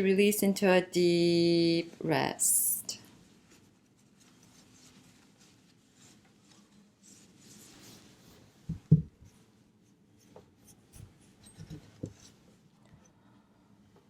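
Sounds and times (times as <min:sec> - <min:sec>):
faint rustling: 0:03.1 - 0:13.0.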